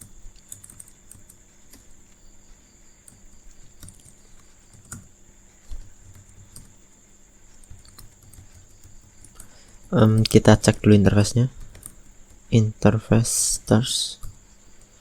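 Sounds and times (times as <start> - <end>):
keyboard typing: 0.0 - 2.2, 3.0 - 6.8, 7.5 - 12.6.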